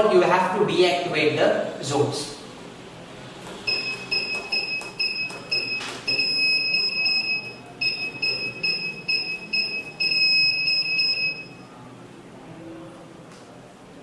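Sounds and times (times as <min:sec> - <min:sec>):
alarm buzzer beeping: 0:03.6 - 0:11.7.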